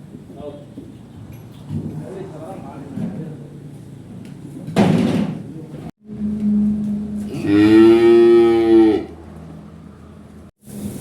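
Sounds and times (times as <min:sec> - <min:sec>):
cow mooing: 0:06.1 - 0:09.3.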